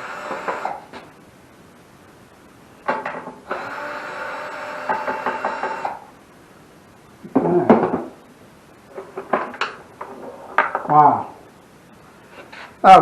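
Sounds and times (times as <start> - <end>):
small power tool motor: 0.0 - 0.8, 3.5 - 6.0
tools knocking and clattering: 8.9 - 11.0.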